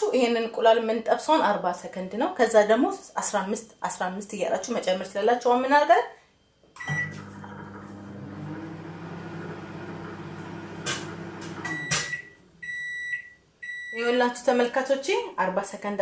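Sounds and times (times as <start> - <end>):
microwave oven humming: 6.8 - 13.8
microwave beep: 6.8 - 14.2
microwave click: 9.8 - 12.3.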